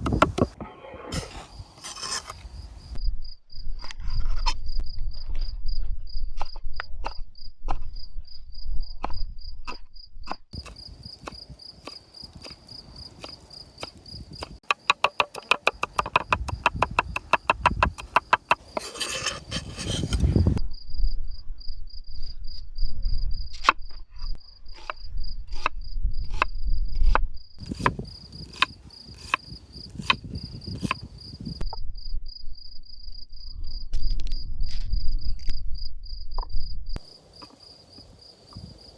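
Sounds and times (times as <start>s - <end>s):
knife chopping onions: 0.0s - 0.6s, 13.2s - 20.4s
cricket chirping: 1.2s - 38.9s.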